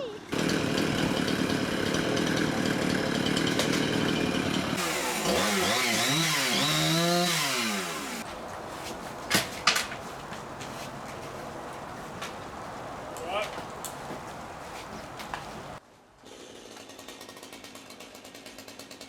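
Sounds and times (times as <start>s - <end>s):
chainsaw running and cutting: 0.3s - 8.2s.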